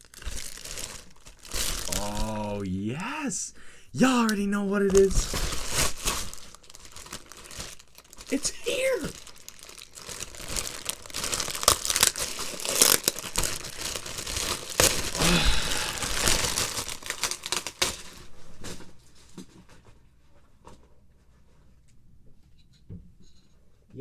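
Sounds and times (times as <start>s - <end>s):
packaging crinkled and torn: 0.0s - 3.2s, 4.0s - 19.5s.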